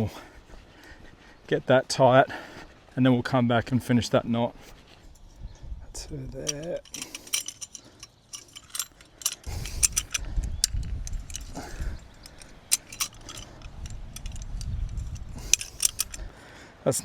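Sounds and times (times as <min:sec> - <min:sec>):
sharp metallic clicks: 0:06.3 - 0:16.3.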